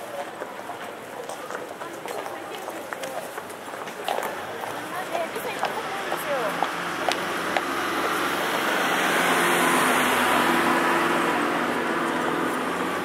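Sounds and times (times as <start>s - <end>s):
vehicle engine and tyre noise: 2.8s - 13.0s.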